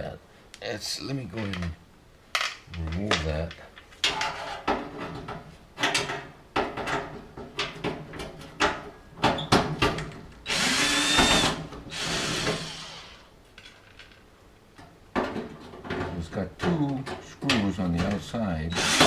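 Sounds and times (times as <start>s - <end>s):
power drill whining: 10.4s - 13.3s, 18.7s - 19.0s.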